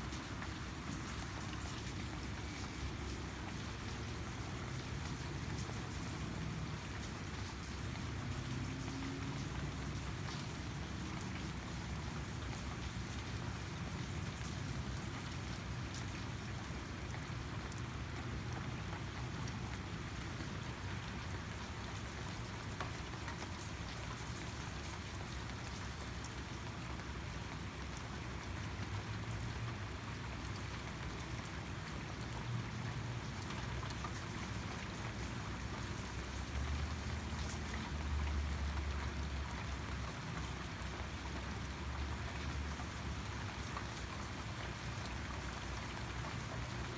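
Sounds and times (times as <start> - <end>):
steady rain falling: 0.0 - 46.9
raindrop ticks: 33.2 - 46.9.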